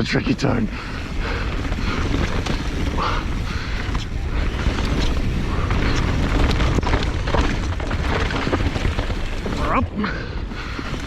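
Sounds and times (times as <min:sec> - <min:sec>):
bike tyre noise: 0:00.0 - 0:11.0
wind buffeting microphone: 0:00.0 - 0:11.0
bike clattering over ground: 0:01.4 - 0:09.8.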